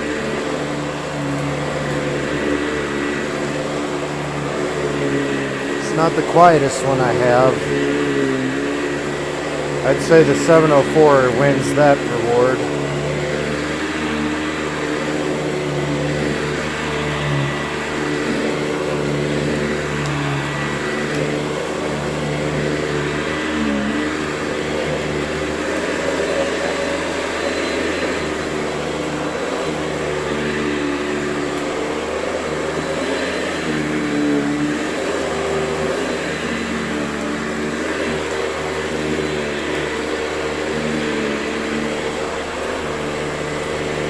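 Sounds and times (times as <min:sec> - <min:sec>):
vacuum cleaner running: 0:00.0 - 0:44.0.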